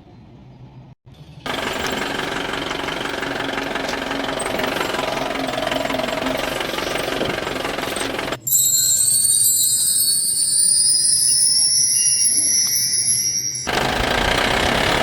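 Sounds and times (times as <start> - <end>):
engine running with knocking rattle: 1.4 - 8.4, 13.6 - 15.0.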